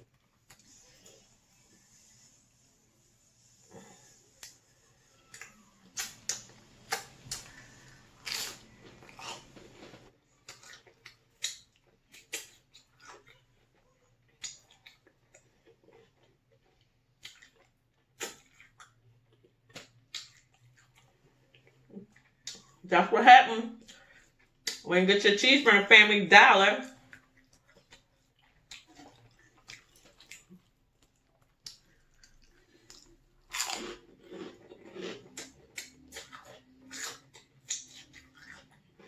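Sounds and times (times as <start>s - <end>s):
chewing crispy pork rinds: 3.4s - 22.9s, 26.9s - 39.0s
wet mouth sounds: 17.2s - 19.0s.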